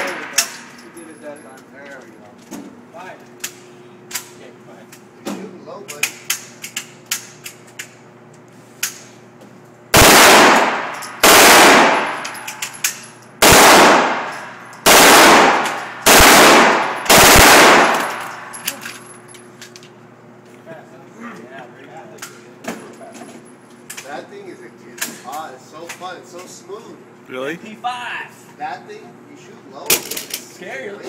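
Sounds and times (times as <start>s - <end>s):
submachine gun bursts: 13.4s - 18.7s.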